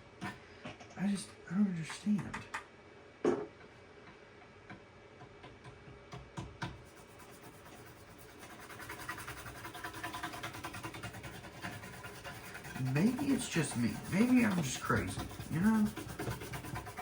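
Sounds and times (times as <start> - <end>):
toothbrush scrubbing: 6.8 - 17.0.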